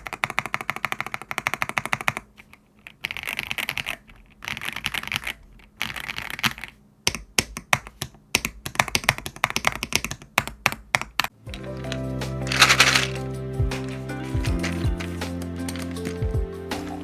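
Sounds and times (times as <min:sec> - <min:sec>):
mechanical keyboard typing: 0:00.0 - 0:13.2
background music: 0:11.4 - 0:17.0.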